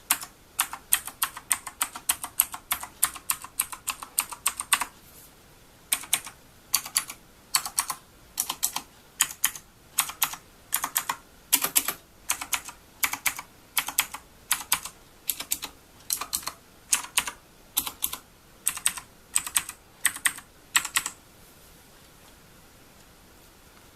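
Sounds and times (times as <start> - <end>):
clicky mechanical keyboard typing: 0.0 - 4.9, 5.9 - 21.2.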